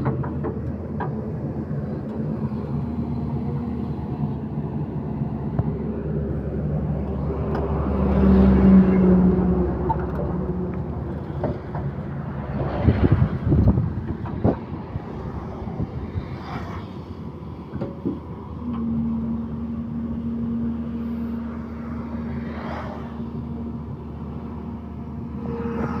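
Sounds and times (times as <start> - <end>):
excavator diesel engine running: 0.0 - 26.0
steady droning tone: 18.4 - 26.0.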